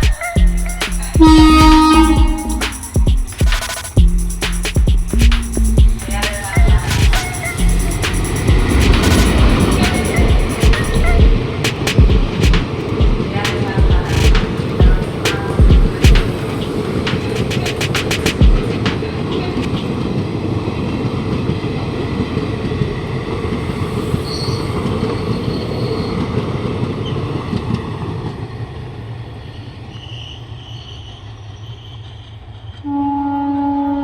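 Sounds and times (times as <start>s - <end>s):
train horn: 0.0s - 2.7s, 32.8s - 34.0s
freight train rumbling past: 0.0s - 34.0s
high wheel squeals: 6.0s - 12.0s, 23.6s - 27.2s, 29.8s - 33.0s.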